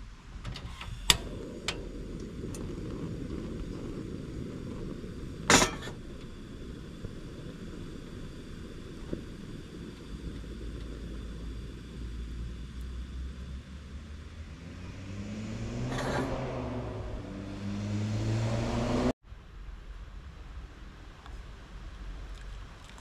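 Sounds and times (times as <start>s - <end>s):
low road rumble: 0.0s - 23.0s
car engine accelerating: 9.7s - 19.2s.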